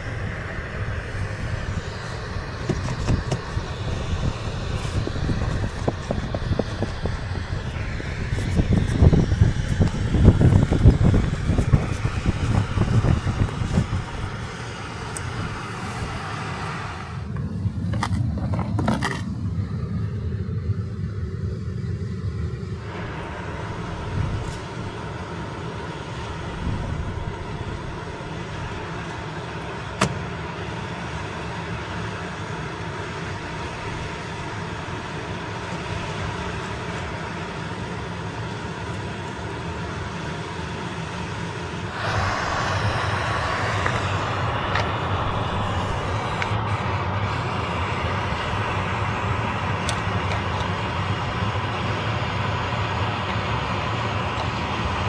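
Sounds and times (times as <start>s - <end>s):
loud hiss: 0.0s - 17.3s, 41.8s - 55.0s
road and engine noise: 0.0s - 55.0s.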